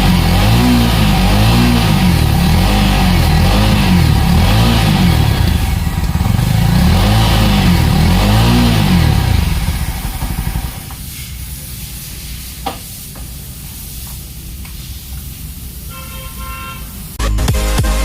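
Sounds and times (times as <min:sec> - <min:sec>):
motorcycle engine idling: 0:00.0 - 0:11.0
faint horn: 0:15.8 - 0:17.2
loud electronic music: 0:17.2 - 0:18.0.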